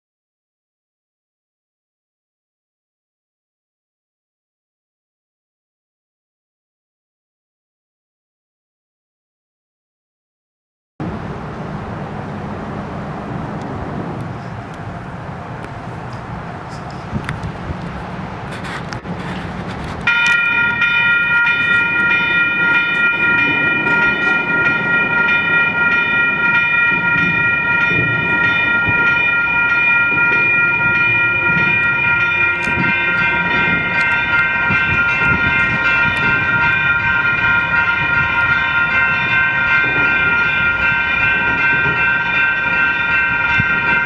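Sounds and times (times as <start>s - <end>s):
freight train cars rumbling: 11.0s - 44.0s
train horn chord: 28.0s - 42.3s.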